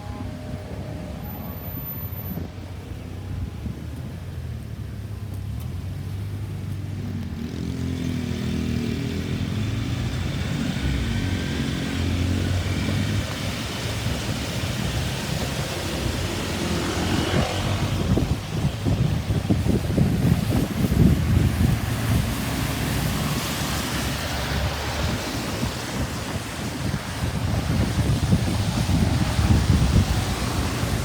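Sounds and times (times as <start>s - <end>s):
vehicle engine approaching: 0.0s - 31.0s
wind buffeting microphone: 8.1s - 31.0s.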